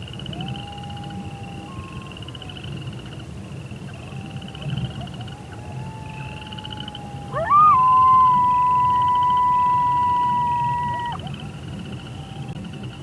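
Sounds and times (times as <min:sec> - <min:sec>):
wolves howling: 0:00.3 - 0:02.8, 0:04.0 - 0:11.6.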